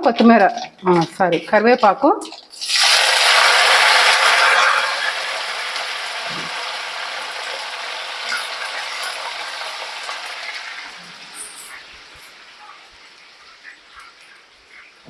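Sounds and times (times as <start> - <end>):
leaves sizzling in hot oil: 2.5 - 15.0.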